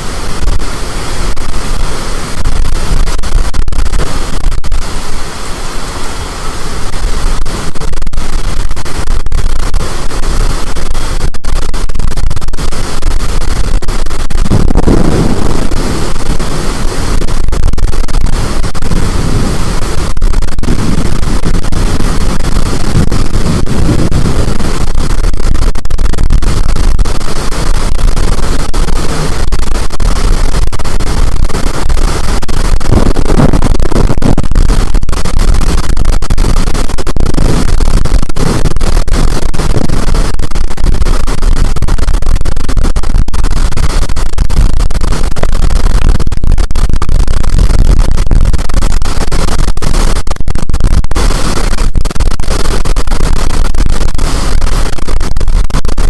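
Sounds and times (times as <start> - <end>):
storm wind buffeting microphone: 12.8 - 40.3.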